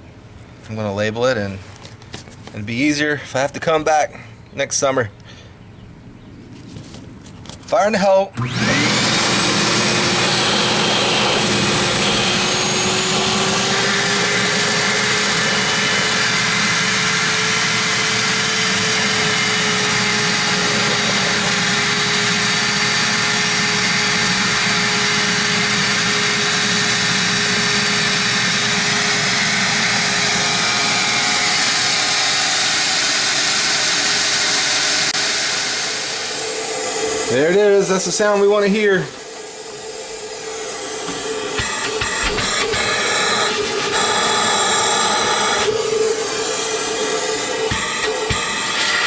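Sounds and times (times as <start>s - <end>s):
shop vacuum running: 8.3s - 49.0s.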